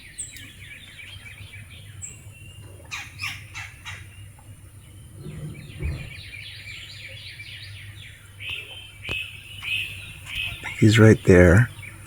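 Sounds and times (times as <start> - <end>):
low bump: 4.8 - 6.4.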